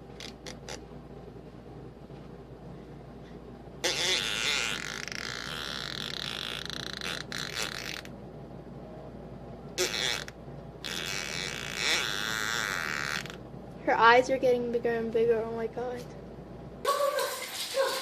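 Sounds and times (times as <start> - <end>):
spluttering farts: 3.8 - 8.1, 9.8 - 13.4.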